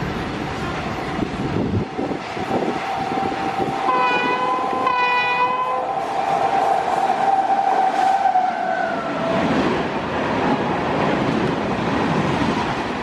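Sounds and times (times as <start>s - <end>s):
rush of moving train: 0.0s - 13.0s
train horn: 2.5s - 9.5s.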